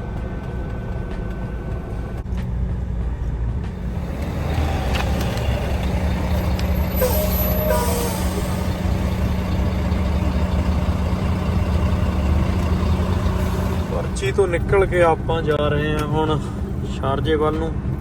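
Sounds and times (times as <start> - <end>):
diesel truck engine running: 0.0 - 18.0
brief squeaky tones: 6.9 - 8.7
air brake hiss: 7.0 - 8.8.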